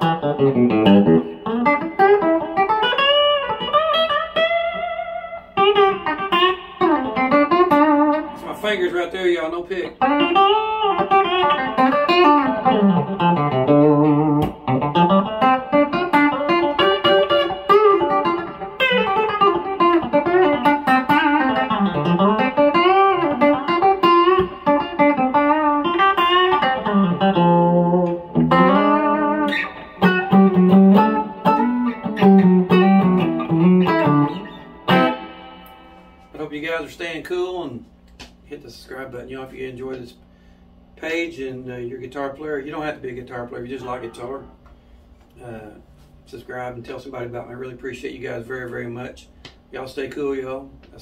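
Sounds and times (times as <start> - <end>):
electric guitar country licks: 0.0 - 38.6.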